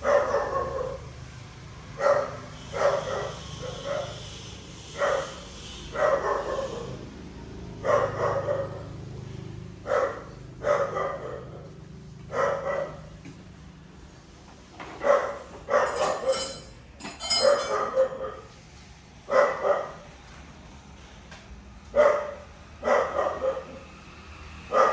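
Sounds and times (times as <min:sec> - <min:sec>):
dog barking: 0:00.0 - 0:01.1, 0:01.9 - 0:04.2, 0:04.9 - 0:07.1, 0:07.8 - 0:09.1, 0:09.8 - 0:13.1, 0:15.0 - 0:16.6, 0:17.3 - 0:18.5, 0:19.3 - 0:20.1, 0:21.9 - 0:23.9, 0:24.7 - 0:24.9.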